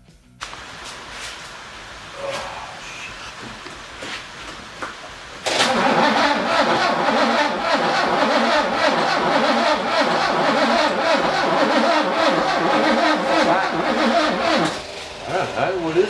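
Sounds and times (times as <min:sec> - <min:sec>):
engine cranking on starter motor: 0:05.4 - 0:16.0.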